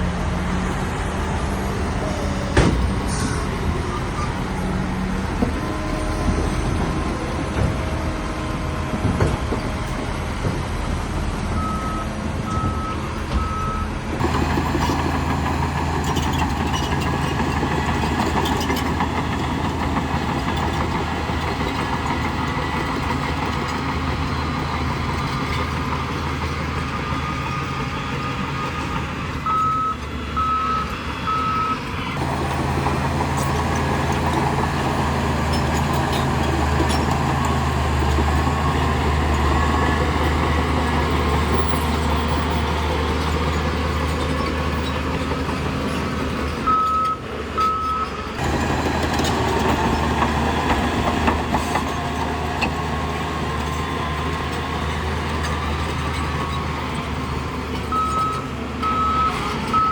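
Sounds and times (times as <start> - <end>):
diesel machinery running: 0.0 - 59.9
reversing alarm beeping: 11.6 - 13.9, 27.3 - 31.9, 46.6 - 48.2, 57.9 - 59.9.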